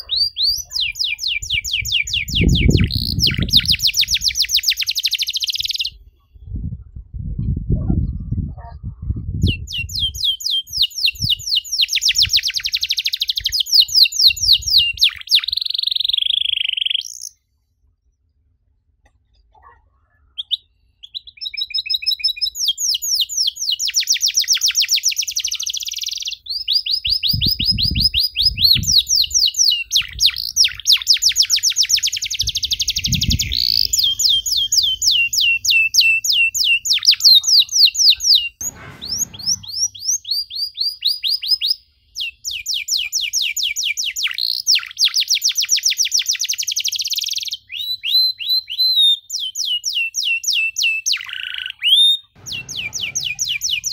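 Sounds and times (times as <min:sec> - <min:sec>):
canary singing trills: 0:00.0 - 0:06.2, 0:09.5 - 0:17.4, 0:20.0 - 0:53.9
low thumps: 0:38.6 - 0:40.0, 0:52.4 - 0:53.9.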